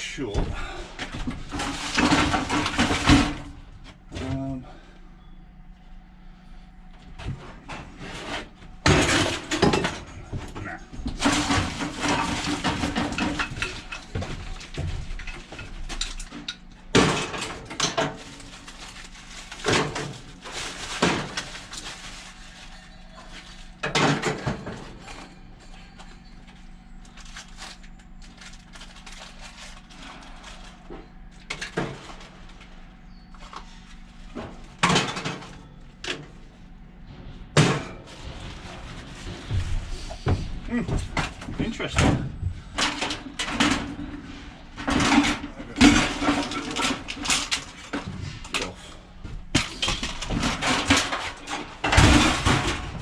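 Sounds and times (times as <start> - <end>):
scrap metal crashing and clattering: 1.0 - 3.6, 7.8 - 22.8, 40.5 - 48.5, 49.4 - 53.0.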